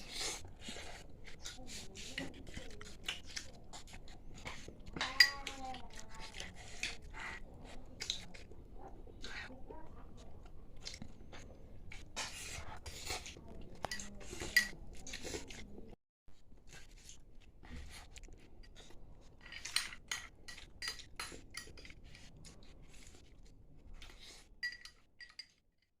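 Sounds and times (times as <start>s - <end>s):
chewing: 0.0s - 16.0s, 16.6s - 25.6s
spoon scraping a plate: 12.0s - 15.4s, 24.2s - 25.6s.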